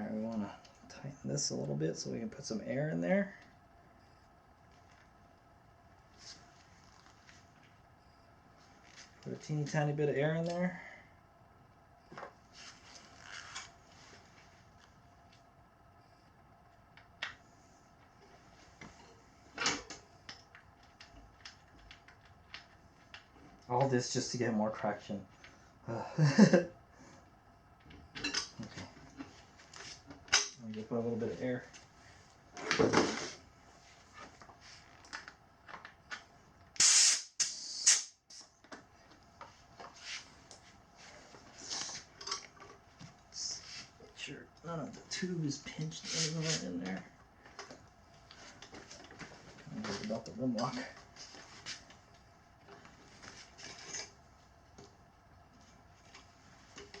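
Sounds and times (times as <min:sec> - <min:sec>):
faint steady hum: 0:00.0 - 0:57.0
compressed air hissing: 0:36.8 - 0:38.4.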